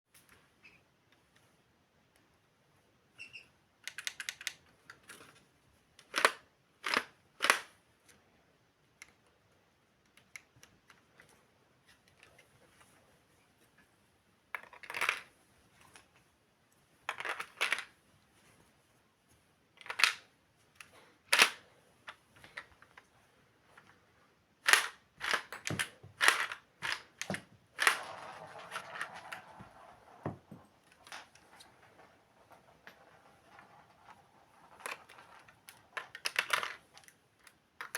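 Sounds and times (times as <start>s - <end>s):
plastic toy shotgun clacking: 24.6s - 29.6s.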